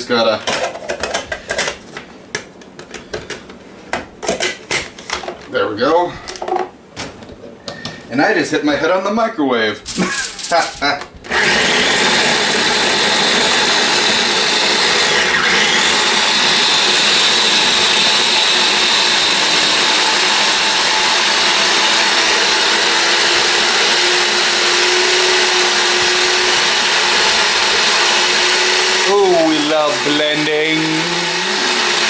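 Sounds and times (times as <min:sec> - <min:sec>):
electric mini blender running: 0:11.3 - 0:32.0.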